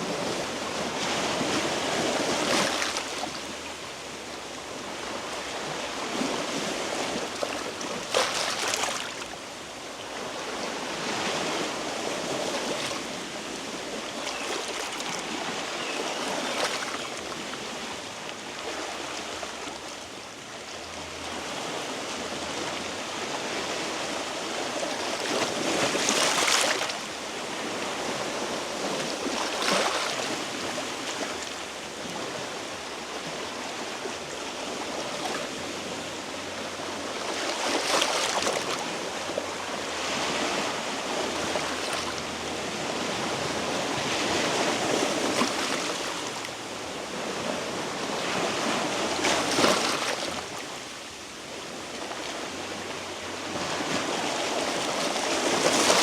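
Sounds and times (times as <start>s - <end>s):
waves washing against rocks: 5.1s - 9.2s, 23.4s - 31.4s.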